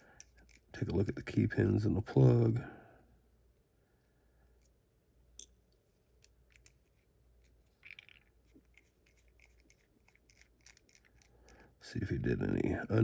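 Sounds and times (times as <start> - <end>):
small clicks of lock parts: 0.1 - 0.7.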